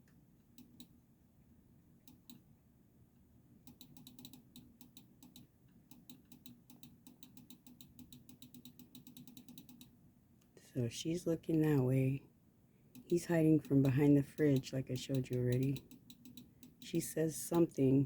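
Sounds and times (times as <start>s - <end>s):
keyboard keys tapping: 13.0s - 16.9s.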